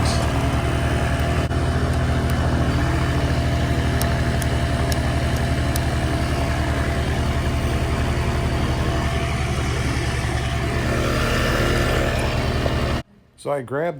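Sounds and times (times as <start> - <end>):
two-stroke engine idling: 0.0 - 13.0.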